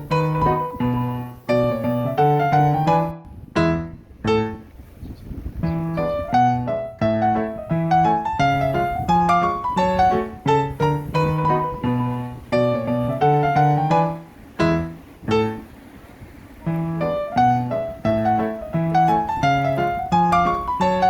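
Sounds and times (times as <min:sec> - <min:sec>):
piano music with bass line: 0:00.0 - 0:15.8, 0:16.5 - 0:21.0.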